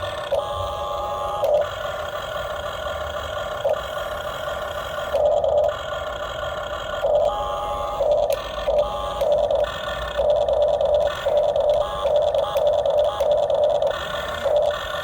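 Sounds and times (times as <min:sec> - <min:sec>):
model excavator motor whirring: 0:00.0 - 0:15.0.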